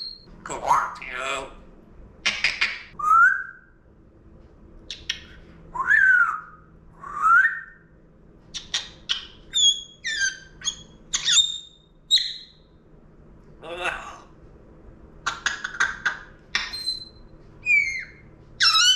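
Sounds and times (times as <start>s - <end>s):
parrot whistling: 2.3s - 3.7s, 4.9s - 7.8s, 8.6s - 12.6s, 15.3s - 18.9s.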